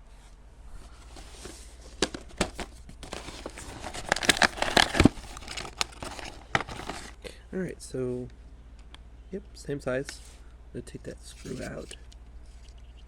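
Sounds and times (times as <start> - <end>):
plastic parts rustling: 0.7 - 7.2, 11.4 - 12.1
plastic clicks and crinkling: 1.9 - 7.2.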